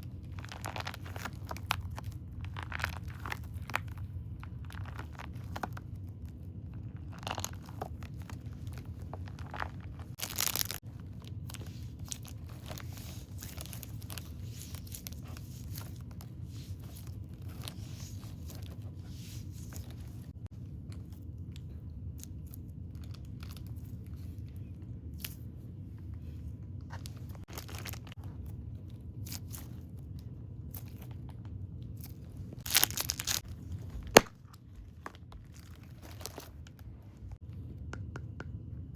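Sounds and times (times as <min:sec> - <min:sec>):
packaging crinkling and tearing: 0:00.0 - 0:20.4, 0:26.9 - 0:28.4, 0:32.0 - 0:36.9
steady low hum: 0:00.0 - 0:38.9
packaging rustling: 0:06.9 - 0:20.4, 0:26.9 - 0:28.2, 0:32.6 - 0:37.3.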